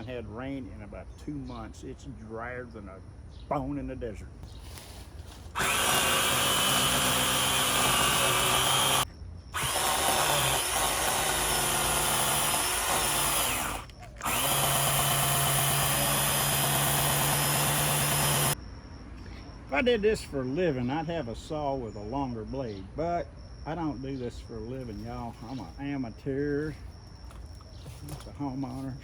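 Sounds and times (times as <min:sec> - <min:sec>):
chainsaw cutting tree limb: 0:05.5 - 0:09.0, 0:09.6 - 0:18.6.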